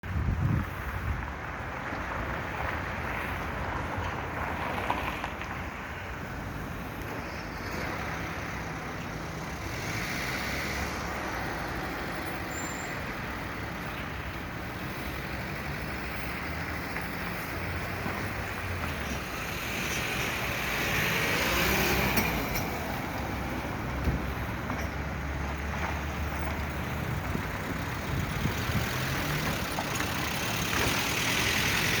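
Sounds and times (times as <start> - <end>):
street traffic noise: 0.0 - 32.0
vehicle passing: 14.4 - 32.0.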